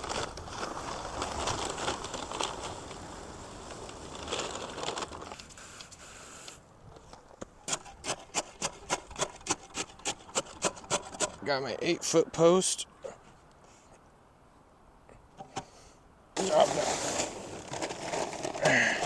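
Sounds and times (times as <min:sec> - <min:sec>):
paper bag rustling: 0:00.0 - 0:05.8, 0:16.4 - 0:19.0
dry concrete mix pouring: 0:16.4 - 0:19.0
grit scraping: 0:16.4 - 0:19.0.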